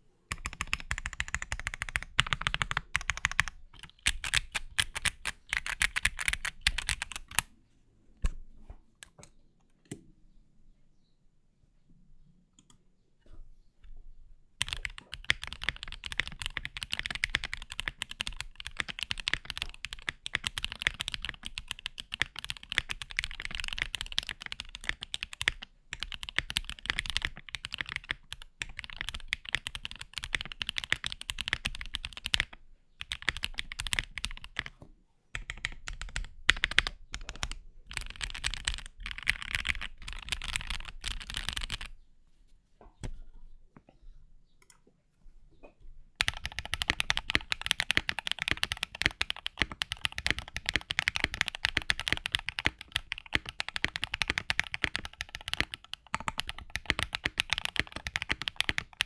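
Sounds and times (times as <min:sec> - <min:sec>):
fast typing on mechanical keyboard: 0:00.3 - 0:07.5, 0:14.6 - 0:34.7, 0:35.4 - 0:41.9, 0:46.2 - 0:59.0.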